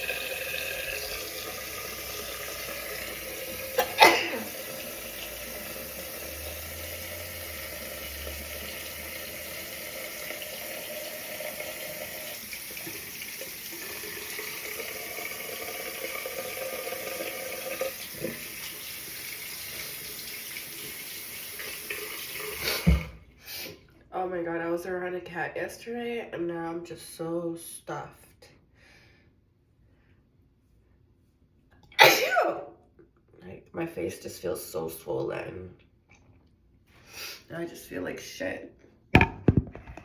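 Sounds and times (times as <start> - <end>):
water running from tap into sink: 0.0 - 23.1.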